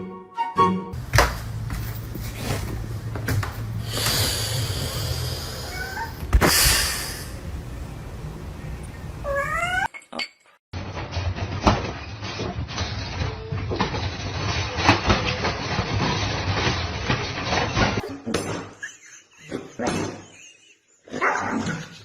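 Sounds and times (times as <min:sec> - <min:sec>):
cat meowing: 0:05.6 - 0:06.2, 0:09.2 - 0:09.9.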